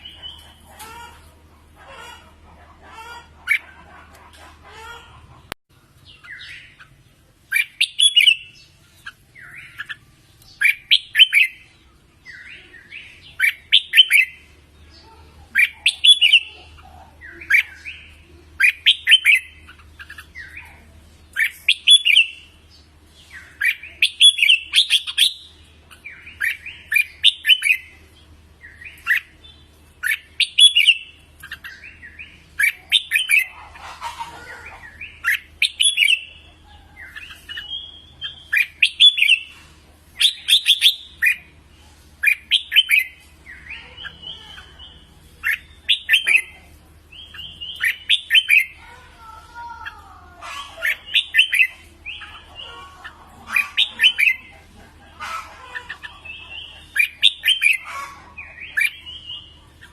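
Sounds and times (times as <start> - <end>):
bird chattering notes: 0.0 - 59.9
bird whistled song: 7.5 - 11.7, 17.3 - 20.6, 21.4 - 22.4, 23.4 - 27.9, 30.0 - 33.5, 35.0 - 36.4, 37.0 - 39.5, 40.2 - 41.5, 42.2 - 46.5, 47.2 - 48.8, 50.9 - 52.4, 56.9 - 57.9.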